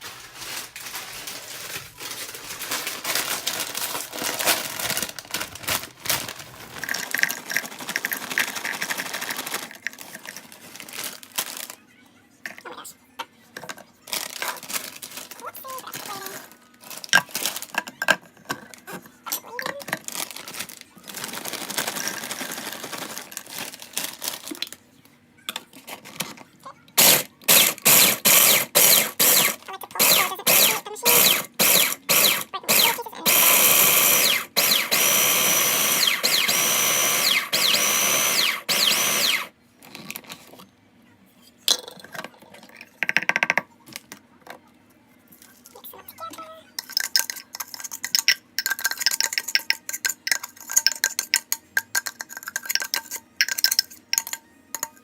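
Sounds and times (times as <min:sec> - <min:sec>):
electric blender grinding: 0:02.0 - 0:11.1, 0:27.0 - 0:39.5.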